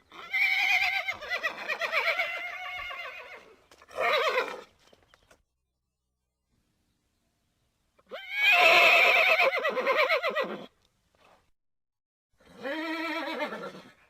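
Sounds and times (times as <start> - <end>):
horse whinnying: 0.0 - 4.8, 8.1 - 10.8, 12.4 - 14.0.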